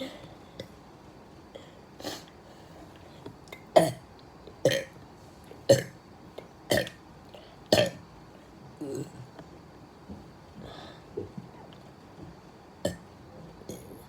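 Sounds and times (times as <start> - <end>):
person burping: 4.7 - 4.9.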